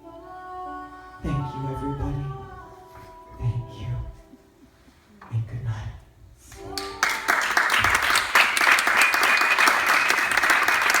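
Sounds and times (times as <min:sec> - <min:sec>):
audience applauding: 0:06.8 - 0:11.0.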